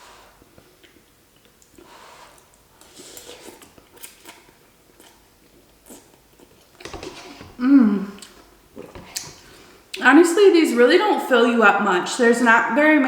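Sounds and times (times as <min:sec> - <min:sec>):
quiet chewing of noodles: 0:00.1 - 0:06.6.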